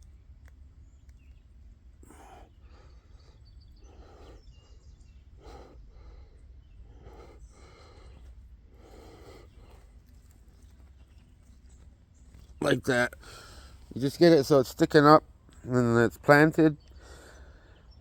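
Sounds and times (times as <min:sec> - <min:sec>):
low steady rumble: 0:00.0 - 0:16.3
person breathing: 0:02.0 - 0:10.4, 0:13.2 - 0:13.9, 0:16.9 - 0:18.0.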